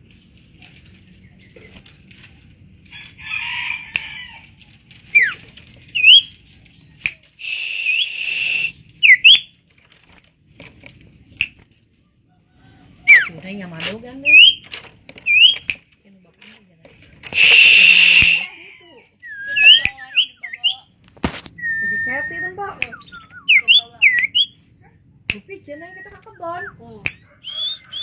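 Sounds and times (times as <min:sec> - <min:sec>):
bird calling: 0:05.0 - 0:09.6, 0:12.6 - 0:13.5, 0:14.2 - 0:15.8, 0:17.3 - 0:24.7, 0:25.4 - 0:28.0
sharp clicks: 0:17.2 - 0:18.5.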